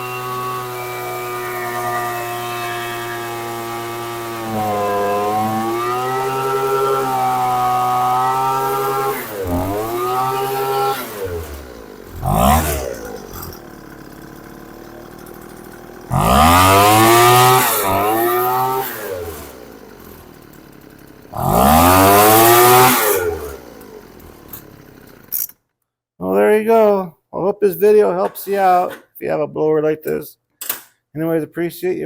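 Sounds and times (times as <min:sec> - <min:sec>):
leaf blower engine revving: 0:00.0 - 0:25.5.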